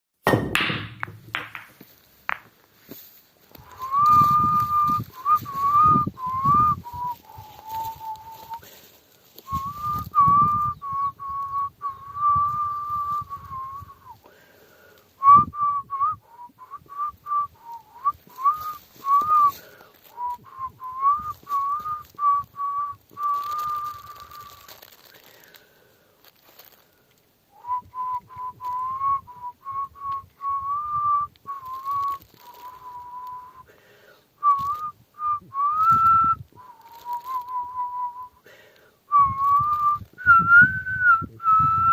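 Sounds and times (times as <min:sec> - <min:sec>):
person whistling a tune: 0:03.6 - 0:08.7, 0:09.5 - 0:14.2, 0:15.2 - 0:25.0, 0:27.6 - 0:33.7, 0:34.4 - 0:38.4, 0:39.1 - 0:41.9.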